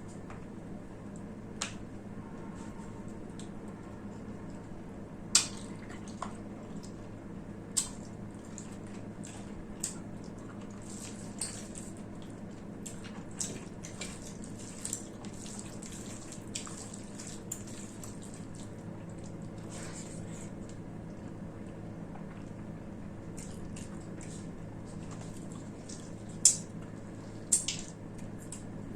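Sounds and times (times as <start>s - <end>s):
steady low hum: 0.0s - 28.9s
wet chewing and lip-smacking: 5.3s - 21.2s, 23.2s - 28.8s.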